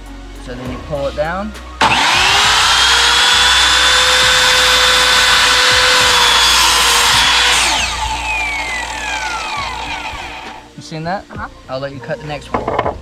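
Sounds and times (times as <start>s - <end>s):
electric chop saw whining: 1.8s - 10.7s.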